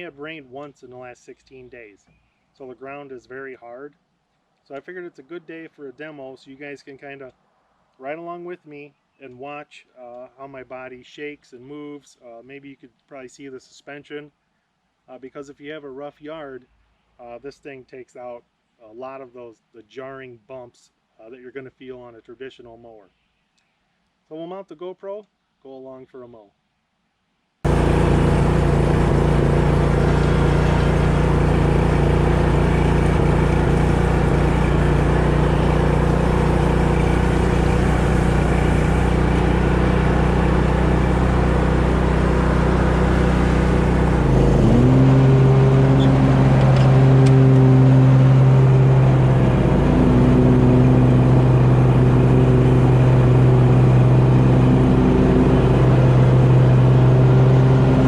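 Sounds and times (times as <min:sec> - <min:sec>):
riding mower engine running: 0:27.7 - 0:58.0.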